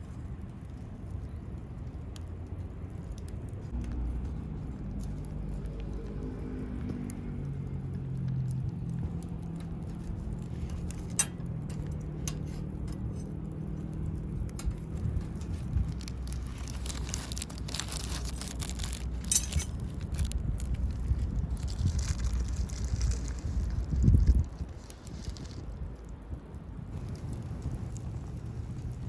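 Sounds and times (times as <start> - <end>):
low steady hum: 0.0 - 22.8.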